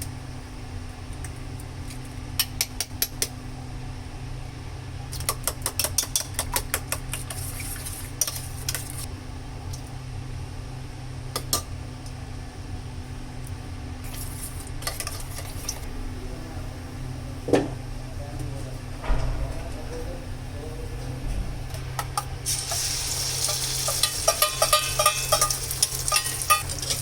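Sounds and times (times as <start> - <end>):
steady low hum: 0.0 - 27.0
fork beating eggs in a bowl: 5.2 - 9.0, 23.5 - 27.0
kitchenware clinks and scrapes: 23.5 - 27.0.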